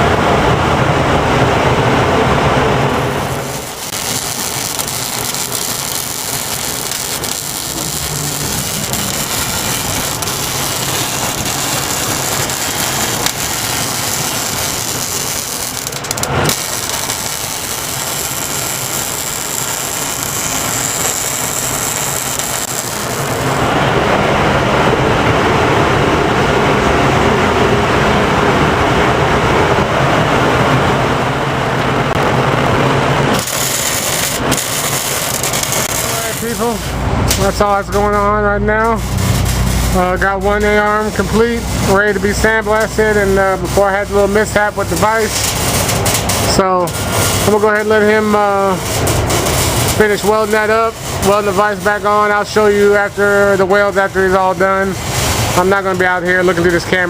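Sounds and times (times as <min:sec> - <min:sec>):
low hum: 0:00.0 - 0:50.0
arc welding hiss: 0:03.2 - 0:23.7, 0:33.3 - 0:57.0.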